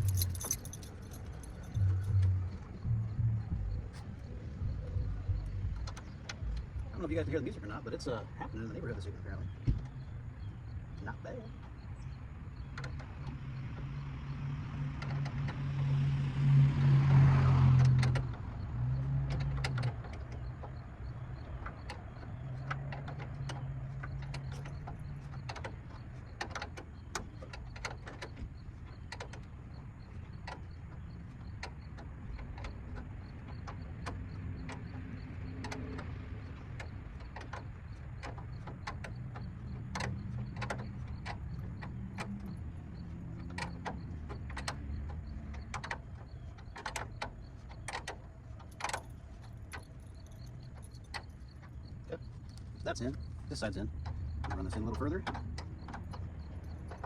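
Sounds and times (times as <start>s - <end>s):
low steady hum: 0.0s - 12.1s.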